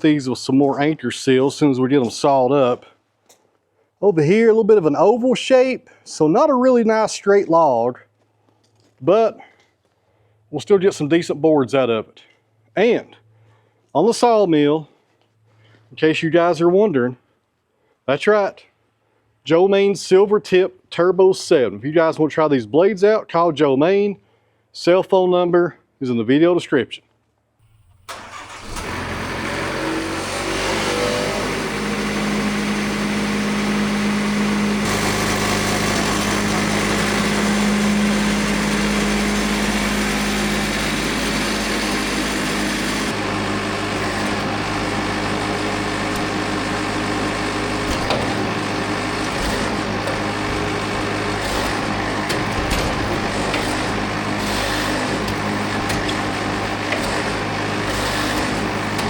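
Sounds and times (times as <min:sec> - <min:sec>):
sawmill engine running: 0:27.7 - 0:59.0.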